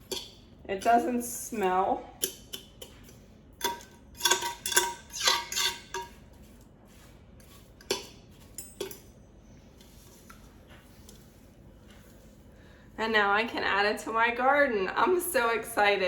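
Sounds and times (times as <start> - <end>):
metal fork clinking on bucket: 0.0 - 1.1, 3.6 - 6.2, 7.8 - 9.1.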